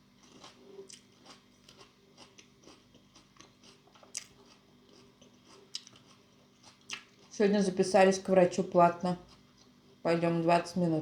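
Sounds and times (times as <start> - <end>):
chewing with crunches: 0.0 - 7.6, 8.6 - 9.8.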